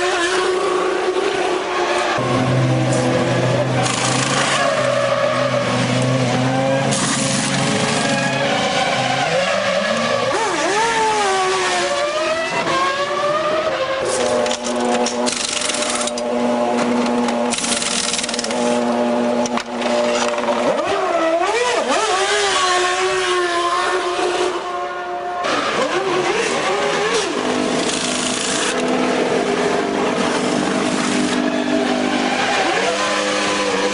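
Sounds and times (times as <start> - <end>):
racing car engines running loud: 0.0 - 33.9
short sharp clicks and rattles: 17.4 - 18.6.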